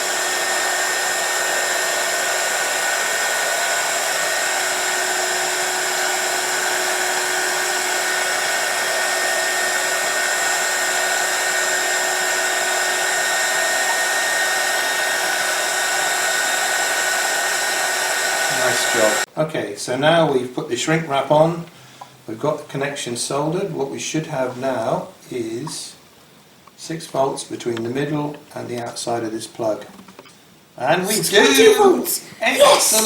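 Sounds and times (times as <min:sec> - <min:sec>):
hot air gun blowing: 0:00.0 - 0:19.3.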